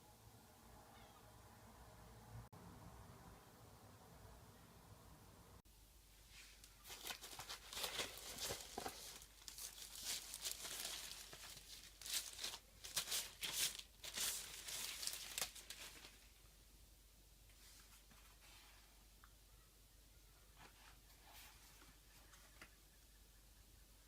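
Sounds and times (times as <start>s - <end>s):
packaging crinkling: 6.8s - 16.3s.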